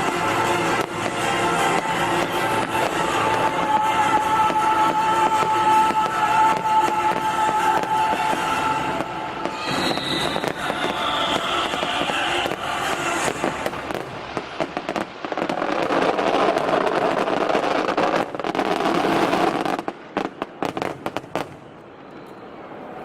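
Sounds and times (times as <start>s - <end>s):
fireworks crackling and popping: 0.0s - 22.6s.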